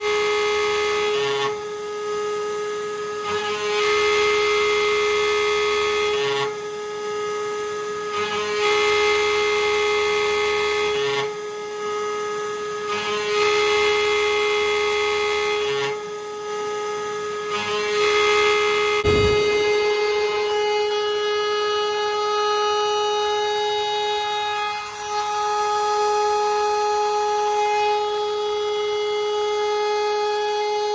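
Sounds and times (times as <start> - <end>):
high spindle whine: 18.9 - 21.0
end mill cutting metal: 19.0 - 19.9.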